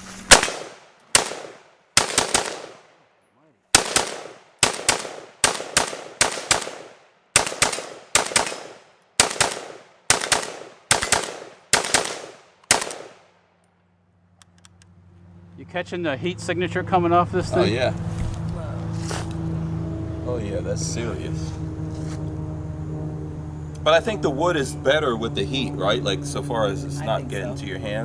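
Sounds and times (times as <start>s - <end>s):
rifle firing rapid shots: 0.3s - 3.0s, 3.7s - 13.3s.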